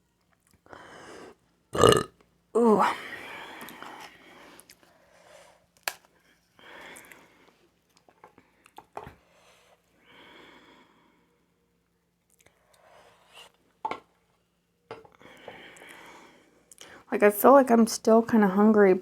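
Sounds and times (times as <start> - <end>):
soft breaths: 2.8 - 13.8, 14.4 - 17.2.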